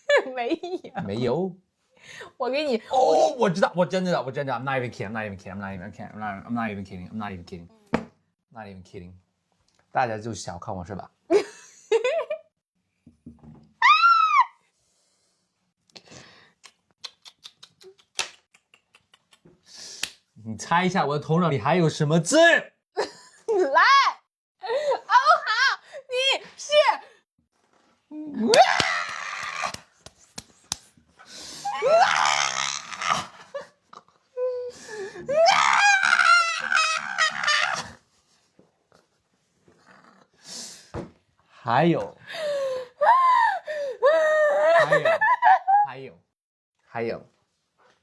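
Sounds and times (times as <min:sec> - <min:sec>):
person shrieking: 0:28.4 - 0:29.8, 0:31.6 - 0:33.4, 0:35.3 - 0:37.9
person squealing: 0:28.4 - 0:29.9, 0:31.6 - 0:33.5, 0:35.3 - 0:38.0.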